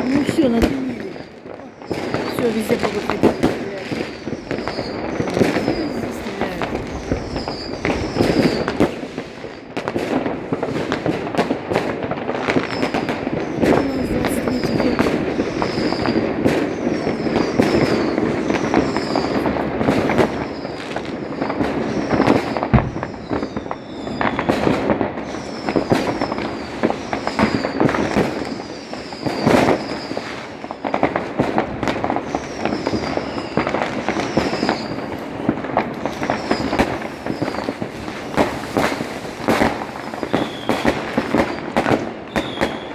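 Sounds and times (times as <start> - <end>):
fireworks bangs and crackling: 0.0 - 42.9
fireworks whistles falling in pitch: 0.0 - 42.9.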